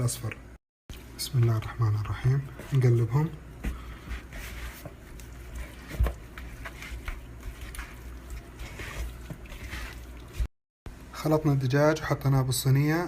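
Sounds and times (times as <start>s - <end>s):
hands squishing raw chicken: 5.0s - 10.5s.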